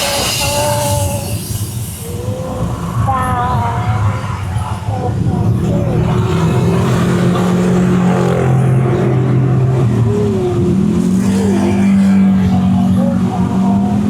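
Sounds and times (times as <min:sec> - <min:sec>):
road noise: 0:00.0 - 0:14.0
vehicle engine running: 0:04.7 - 0:14.0.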